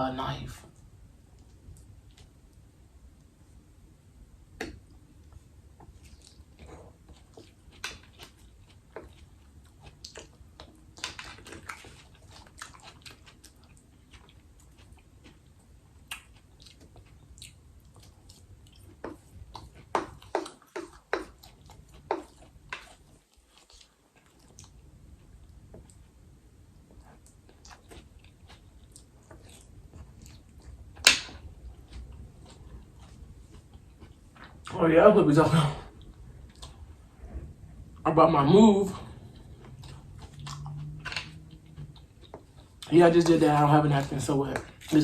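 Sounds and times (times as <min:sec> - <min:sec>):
person chewing food: 0:04.6 - 0:34.7, 0:35.6 - 0:37.2, 0:38.7 - 0:45.0.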